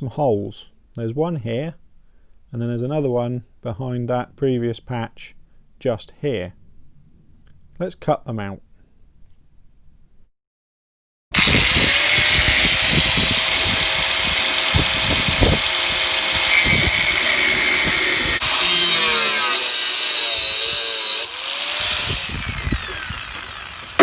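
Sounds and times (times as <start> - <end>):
angle grinder cutting steel: 11.3 - 24.0.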